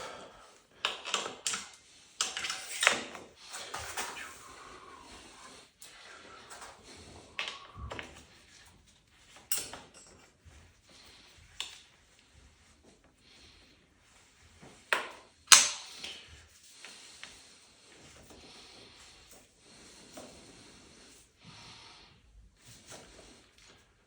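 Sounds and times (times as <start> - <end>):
clicks and knocks handling bike wheel: 0.8 - 4.3, 14.6 - 17.4.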